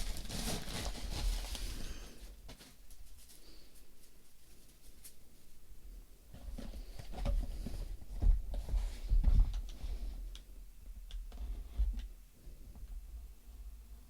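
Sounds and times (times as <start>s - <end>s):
parcel rustling: 0.0s - 5.6s.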